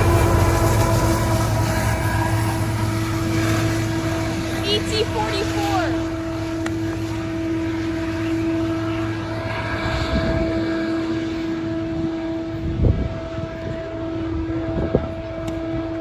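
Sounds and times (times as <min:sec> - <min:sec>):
diesel locomotive droning: 0:00.0 - 0:16.0.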